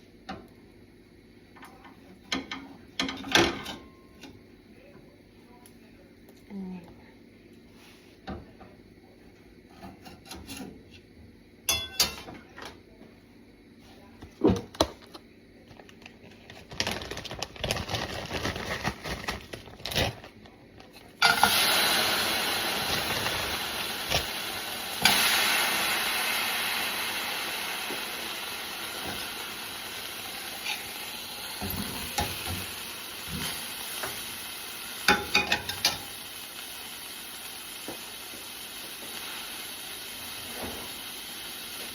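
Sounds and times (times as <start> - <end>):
utensils clinking against pan: 11.7 - 12.5, 21.2 - 21.6, 35.1 - 36.2
food sizzling in hot oil: 21.2 - 41.9.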